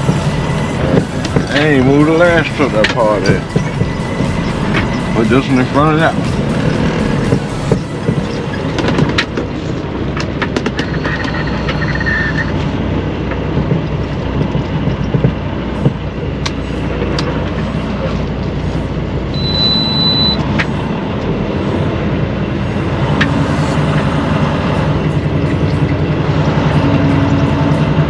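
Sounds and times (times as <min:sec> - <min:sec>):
vehicle engine and road noise: 0:00.0 - 0:28.0
short high-pitched beep: 0:10.8 - 0:12.5, 0:19.3 - 0:20.4.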